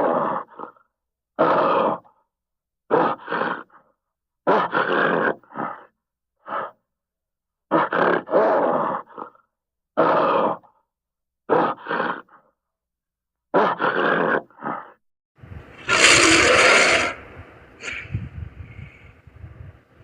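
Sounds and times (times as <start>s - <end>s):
gorilla grunting: 2.9s - 3.8s, 4.5s - 5.9s, 7.7s - 9.4s, 10.0s - 10.7s, 11.5s - 12.4s, 13.5s - 15.0s, 15.8s - 18.3s.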